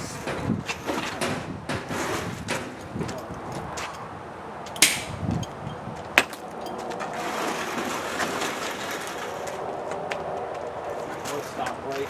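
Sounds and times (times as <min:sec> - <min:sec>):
sharp knock: 0:04.8 - 0:05.2
casters rolling on hard floor: 0:06.9 - 0:09.7.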